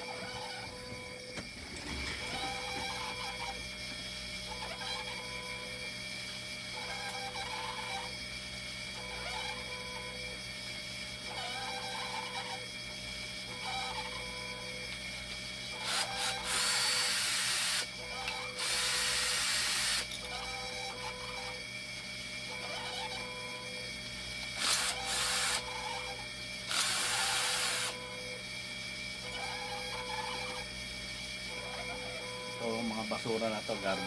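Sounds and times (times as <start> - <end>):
power screwdriver whirring: 0.0 - 3.6, 15.8 - 20.8, 24.4 - 28.0.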